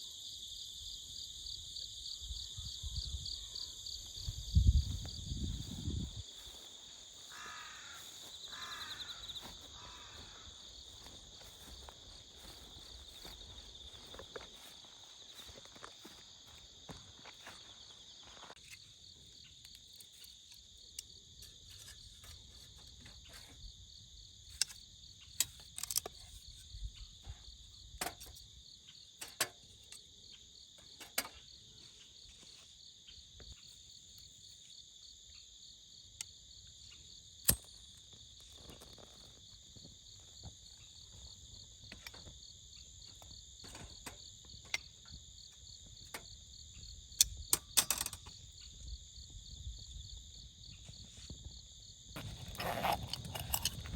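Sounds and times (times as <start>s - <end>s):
crickets trilling: 0.0s - 53.9s.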